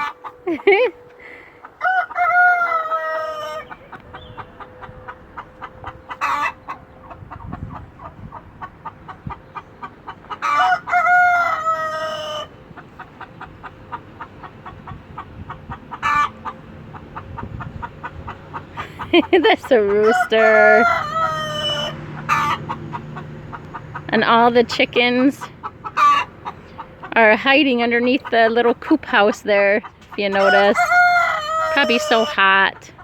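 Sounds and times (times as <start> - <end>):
chickens clucking: 0.0 - 33.0
rooster crowing: 1.2 - 3.8, 10.4 - 12.5, 20.0 - 22.6, 30.4 - 32.3.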